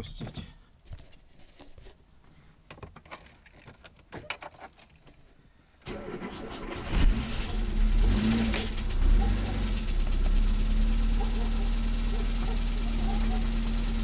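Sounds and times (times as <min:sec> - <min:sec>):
car engine running: 0:06.9 - 0:14.0.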